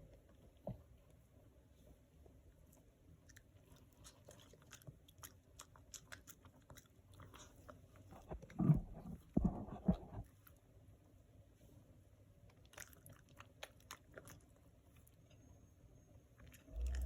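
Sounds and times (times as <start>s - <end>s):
dogs chewing: 2.6s - 10.5s, 12.5s - 15.2s, 16.4s - 17.0s
dogs licking and smacking: 2.6s - 10.5s, 12.5s - 15.2s.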